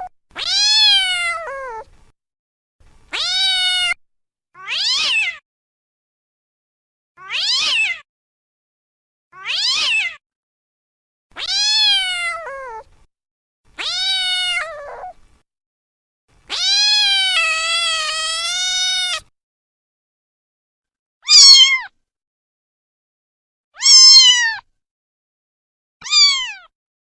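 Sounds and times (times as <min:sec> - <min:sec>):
cat meowing: 0:00.0 - 0:01.9, 0:03.1 - 0:04.0, 0:04.6 - 0:05.4, 0:07.2 - 0:08.0, 0:09.4 - 0:10.2, 0:11.3 - 0:12.9, 0:13.8 - 0:15.2, 0:16.5 - 0:19.3, 0:21.2 - 0:21.9, 0:23.8 - 0:24.7, 0:26.0 - 0:26.7.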